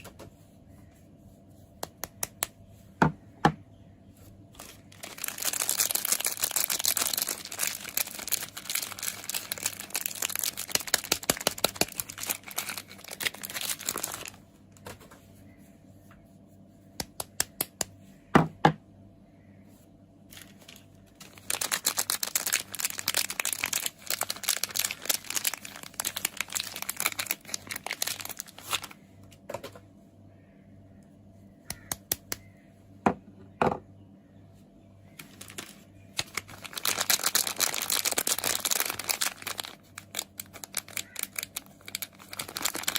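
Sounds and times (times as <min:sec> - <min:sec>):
packaging crinkling and tearing: 0:04.6 - 0:14.4, 0:20.3 - 0:29.0, 0:35.2 - 0:42.9.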